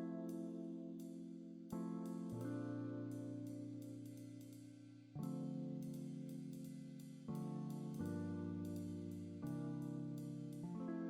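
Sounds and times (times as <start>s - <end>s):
background music chords: 0.0s - 11.0s
light high ticks: 3.1s - 10.7s.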